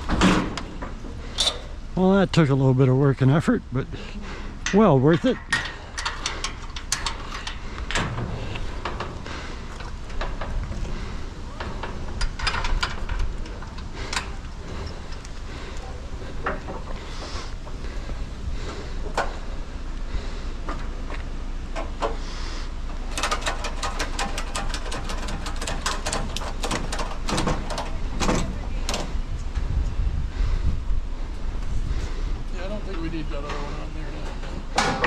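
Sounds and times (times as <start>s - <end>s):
scrap metal clanking: 0.0s - 1.9s, 4.4s - 18.0s, 21.8s - 29.2s, 32.6s - 35.0s
low rumble: 27.6s - 33.3s.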